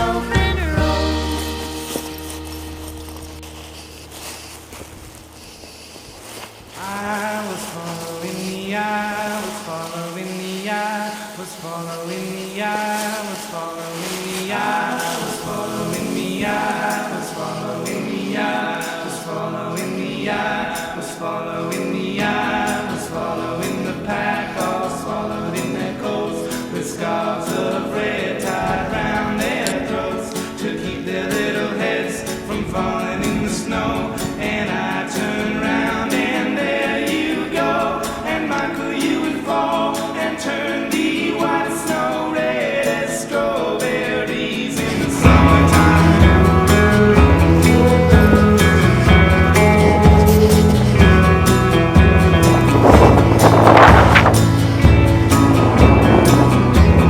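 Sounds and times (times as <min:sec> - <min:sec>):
heavy bass: 0:00.0 - 0:05.3, 0:45.2 - 0:57.0
music with sung vocals: 0:00.0 - 0:05.8, 0:06.8 - 0:57.0.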